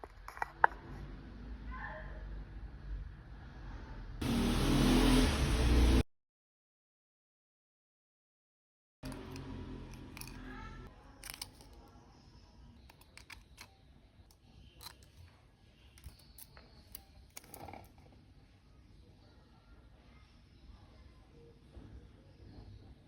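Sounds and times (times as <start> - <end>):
tools clicking and scraping on watch: 9.0 - 10.6, 11.2 - 11.8, 12.9 - 13.7, 14.8 - 15.3, 15.9 - 18.1.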